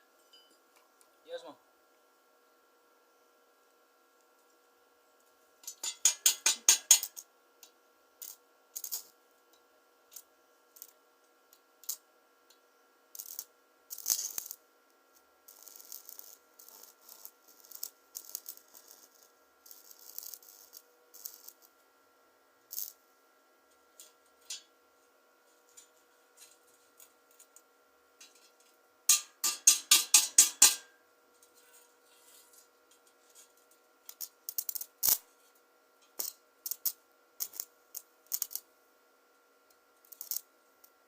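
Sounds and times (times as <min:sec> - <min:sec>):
faint steady hum: 0:00.0 - 0:41.0
small metal parts clicking: 0:05.6 - 0:07.2, 0:08.2 - 0:09.1, 0:13.2 - 0:14.6, 0:28.2 - 0:35.2, 0:36.0 - 0:38.6, 0:40.0 - 0:40.4.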